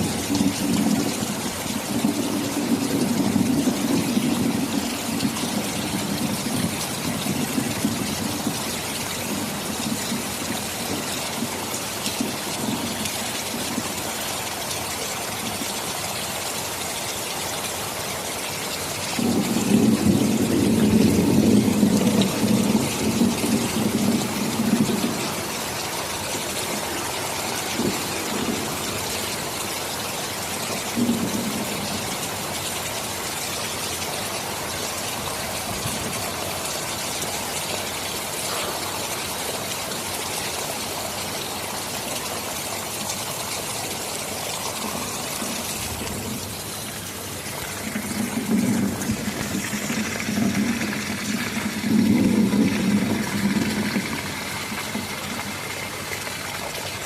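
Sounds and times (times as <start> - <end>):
thunder rumbling: 0.0 - 14.0, 19.2 - 29.7, 30.3 - 32.3, 44.6 - 56.2
heavy rain hissing: 0.0 - 57.0.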